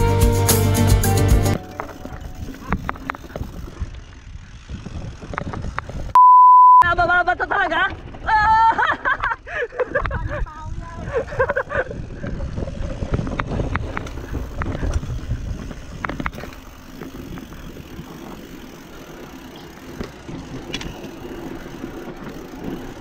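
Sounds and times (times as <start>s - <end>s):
bike knocks and rattles: 1.6s - 6.2s, 11.7s - 23.0s
bike tyres rumbling on dirt: 1.6s - 6.2s, 7.0s - 23.0s.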